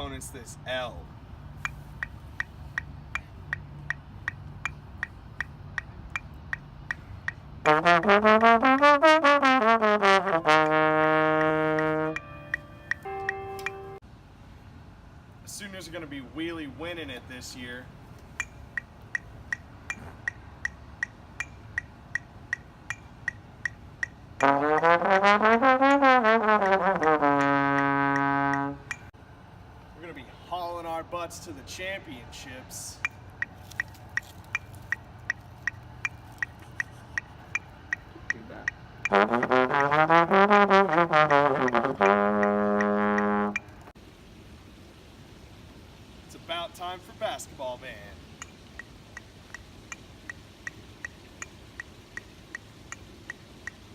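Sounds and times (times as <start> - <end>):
metronome clicking: 1.6 - 9.0, 10.6 - 14.0, 18.4 - 25.3, 33.0 - 43.9, 48.4 - 53.9
brass instrument playing: 7.6 - 14.0, 24.4 - 29.1, 39.0 - 43.9.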